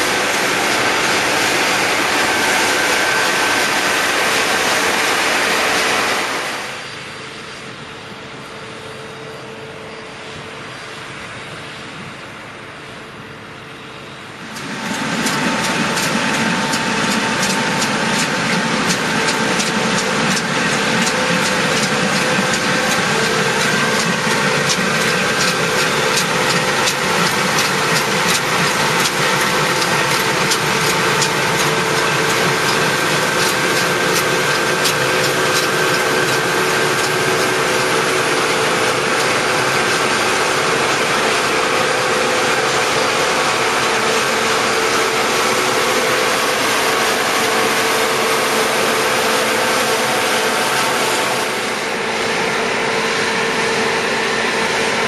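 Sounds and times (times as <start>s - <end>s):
combine harvester running: 0.0s - 55.0s
fast ticking rattle: 14.5s - 49.3s.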